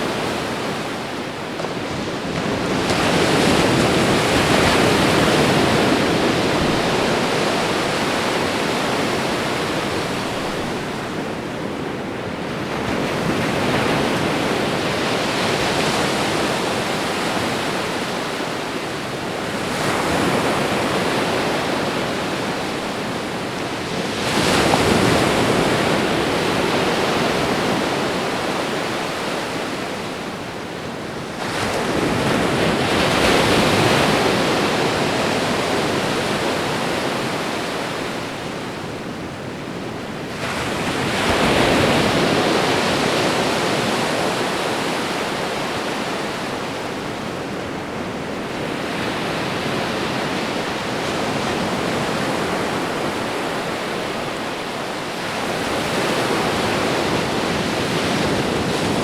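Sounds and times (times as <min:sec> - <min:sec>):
ocean waves breaking on shore: 0:00.0 - 0:59.0.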